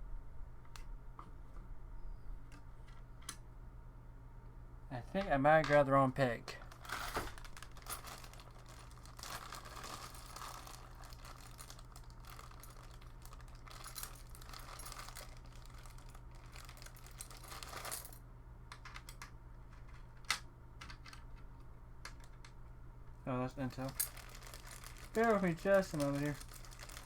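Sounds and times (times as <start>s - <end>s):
metal hardware clicking and rattling: 23.7s - 27.0s.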